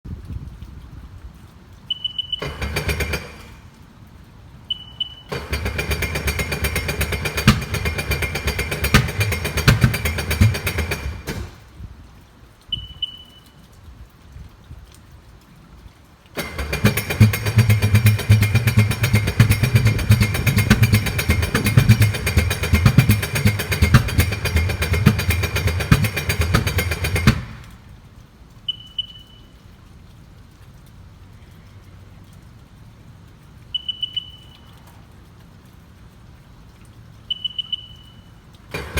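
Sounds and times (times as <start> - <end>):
starter cranking engine with pops: 2.4 - 3.8, 5.2 - 11.7, 16.4 - 27.9.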